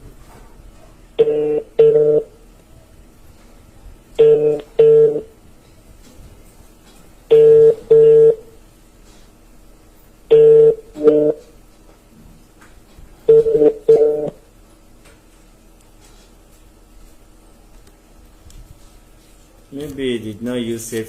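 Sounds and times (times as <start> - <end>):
telephone ringback tone: 1.2 - 2.4, 4.2 - 5.3, 7.3 - 8.5, 10.3 - 11.4, 13.3 - 14.4.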